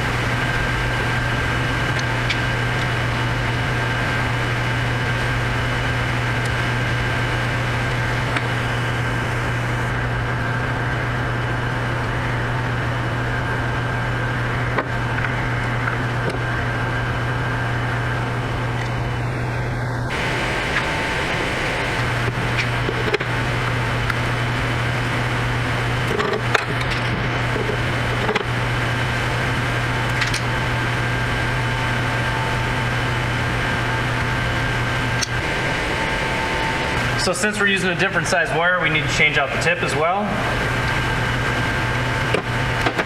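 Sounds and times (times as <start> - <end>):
fan motor humming: 20.1 - 22.4, 35.4 - 38.6
faint steady whine: 20.1 - 24.8, 35.4 - 39.4.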